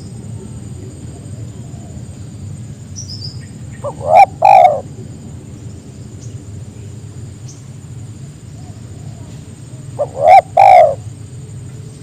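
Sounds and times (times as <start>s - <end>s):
low background hum: 0.0s - 12.0s
dove cooing: 3.8s - 4.9s, 8.6s - 11.2s.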